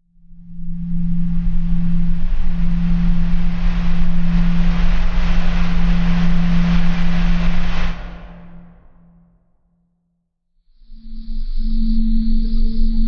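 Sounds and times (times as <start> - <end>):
low hum and deep rumble: 0.0 - 9.4.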